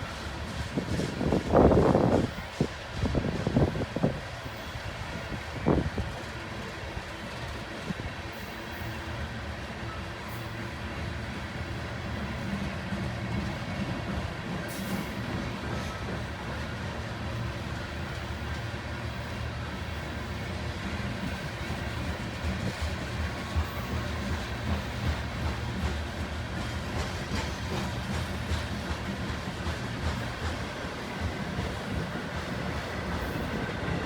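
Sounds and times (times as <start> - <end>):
train wheels rumbling on rail: 0.0 - 34.0.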